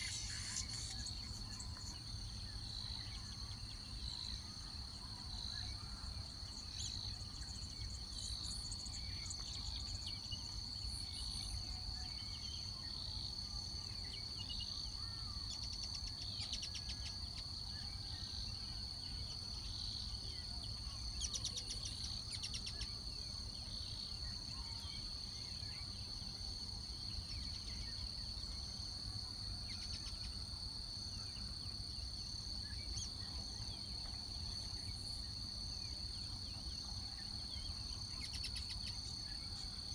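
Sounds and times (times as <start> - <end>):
insects trilling: 0.0 - 3.2.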